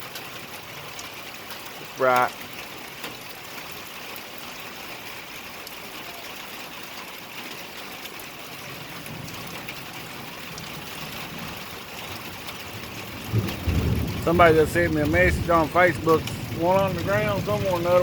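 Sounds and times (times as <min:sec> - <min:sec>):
steady rain falling: 0:00.0 - 0:18.0
faint drip ticks: 0:10.5 - 0:18.0.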